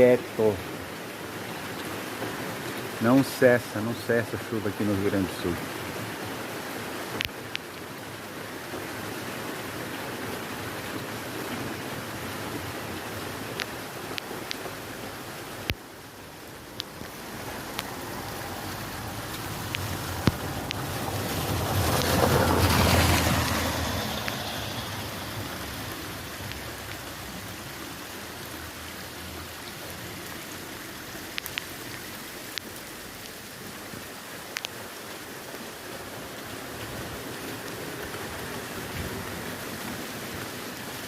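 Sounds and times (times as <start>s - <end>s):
heavy rain: 0.0s - 41.0s
sharp drip ticks: 7.1s - 7.9s, 13.5s - 14.8s, 15.6s - 20.9s, 21.8s - 27.6s, 28.2s - 33.4s, 34.4s - 35.2s.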